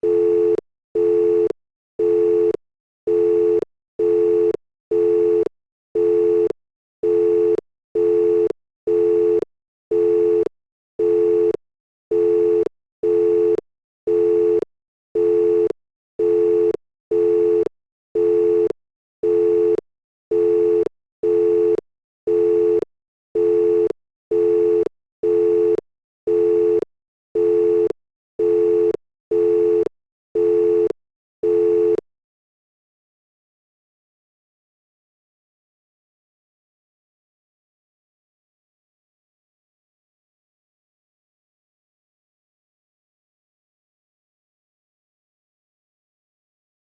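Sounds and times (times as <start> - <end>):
telephone line tone beeping: 0.0 - 14.6, 15.2 - 22.8, 23.4 - 26.8, 27.4 - 32.0.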